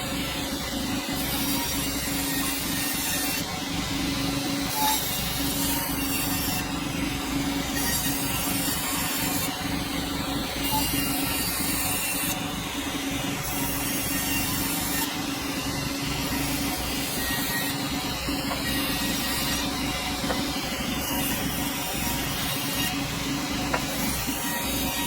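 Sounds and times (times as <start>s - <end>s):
saw blade cutting log: 4.5s - 6.7s, 7.6s - 9.6s, 15.9s - 25.0s.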